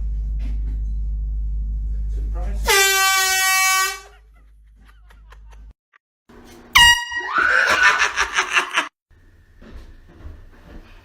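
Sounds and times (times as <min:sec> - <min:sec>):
air horn blast: 0:02.6 - 0:04.1, 0:06.7 - 0:07.4.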